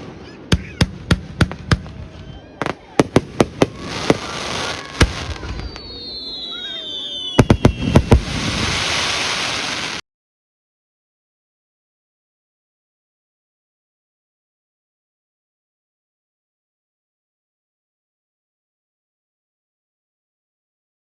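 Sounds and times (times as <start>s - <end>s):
fireworks bangs: 0.0s - 10.0s
falling whistles: 2.1s - 10.0s
crackling hiss: 2.8s - 10.0s.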